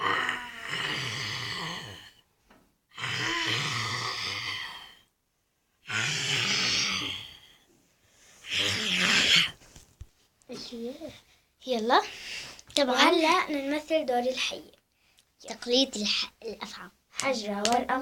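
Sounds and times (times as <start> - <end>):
girl imitating lion roar: 0.0 - 2.2, 2.9 - 5.0, 5.9 - 7.5, 8.4 - 9.6.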